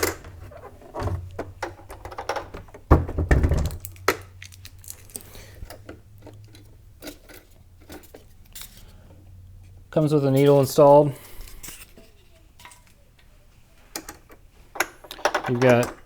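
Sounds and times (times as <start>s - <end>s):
loud thunk: 2.9s - 3.8s.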